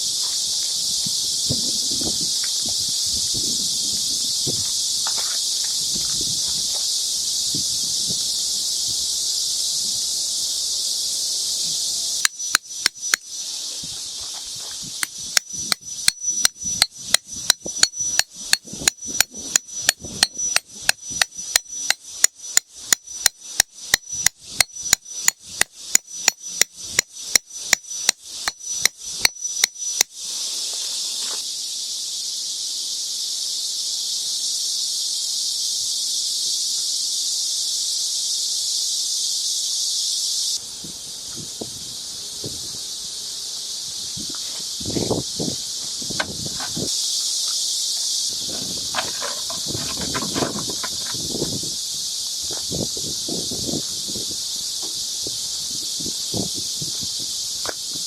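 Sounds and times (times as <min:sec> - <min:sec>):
cicadas buzzing: 0:00.0 - 0:58.0.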